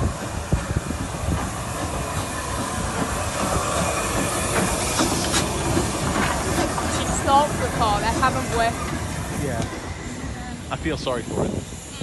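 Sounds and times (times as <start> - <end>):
train wheels clattering on track: 0.0 - 12.0
steady hiss: 9.1 - 12.0.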